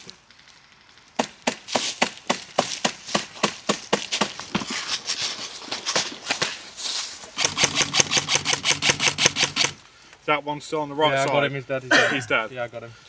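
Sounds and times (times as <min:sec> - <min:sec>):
airsoft guns firing: 0:07.4 - 0:09.8.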